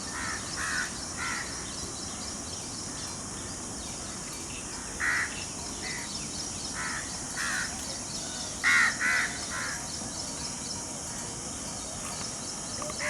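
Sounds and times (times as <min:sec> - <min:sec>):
crows cawing: 0:08.6 - 0:09.8.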